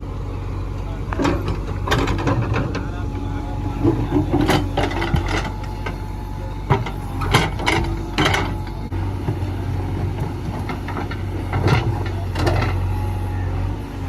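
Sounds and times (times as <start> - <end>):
diesel engine running: 0.0 - 14.0.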